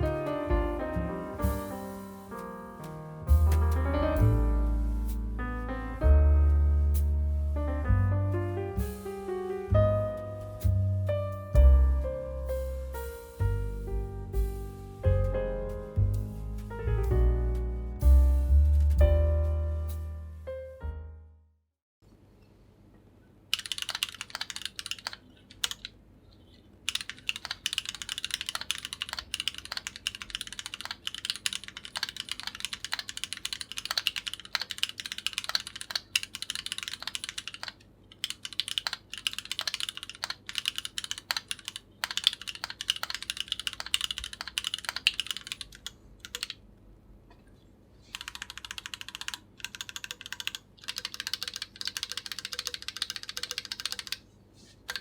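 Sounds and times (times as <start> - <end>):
typing on mechanical keyboard: 23.5 - 26.0, 26.8 - 46.6, 48.1 - 54.2.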